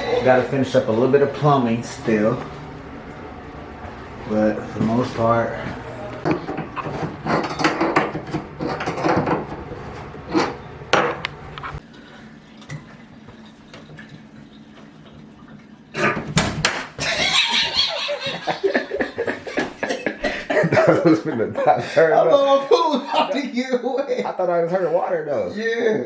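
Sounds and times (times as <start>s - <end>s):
knocking and clattering: 6.3s - 9.6s.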